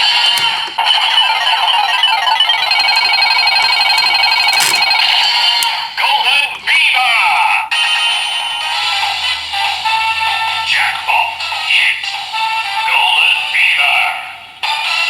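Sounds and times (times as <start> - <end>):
jingly electronic toy music: 0.0 - 6.0
sharp clicks: 0.3 - 5.8.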